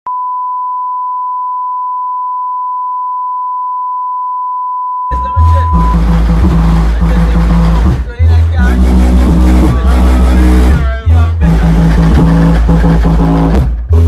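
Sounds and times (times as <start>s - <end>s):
steady single-pitch beep: 0.1s - 6.0s
car stereo music with deep bass: 5.1s - 14.0s.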